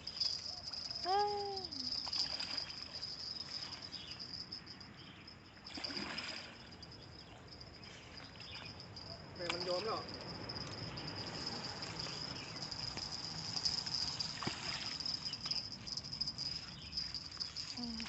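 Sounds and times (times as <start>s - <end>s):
insect chorus drone: 0.0s - 18.0s
faint ticks and rustles: 7.5s - 18.0s.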